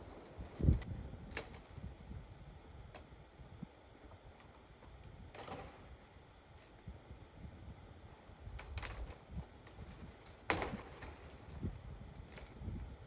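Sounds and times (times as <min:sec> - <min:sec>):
sharp cracks: 0:08.5 - 0:11.4.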